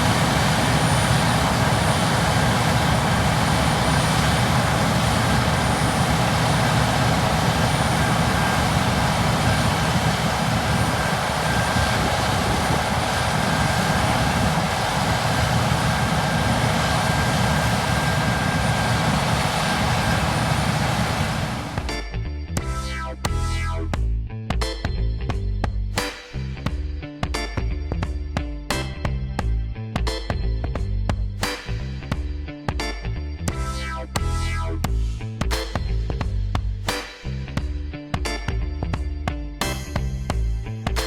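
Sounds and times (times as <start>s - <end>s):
harvest machinery engine drone: 0.0s - 22.0s.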